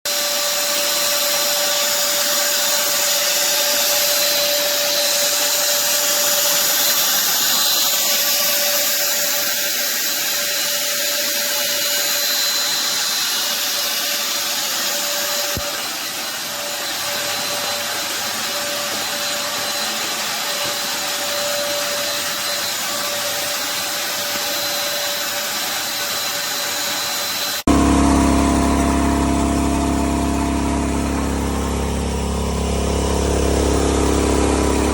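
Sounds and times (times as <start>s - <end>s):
dust extractor running: 0.1s - 34.9s
deep low machine hum: 27.7s - 34.9s.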